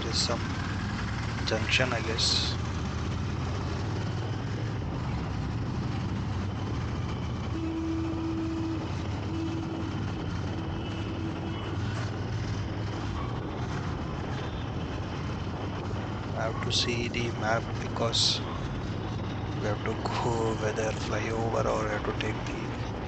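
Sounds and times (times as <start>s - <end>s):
motorcycle engine running: 0.0s - 23.0s
traffic noise: 0.0s - 23.0s
faint steady tone: 6.3s - 15.0s.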